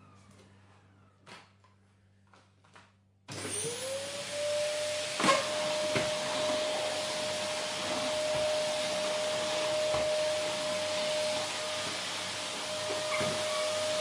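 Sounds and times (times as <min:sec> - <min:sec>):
vacuum cleaner running: 0:03.3 - 0:14.0.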